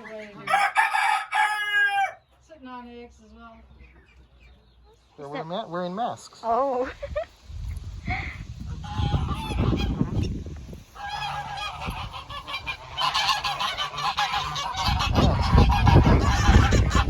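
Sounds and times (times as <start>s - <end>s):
geese honking: 8.8s - 10.3s, 10.9s - 17.0s.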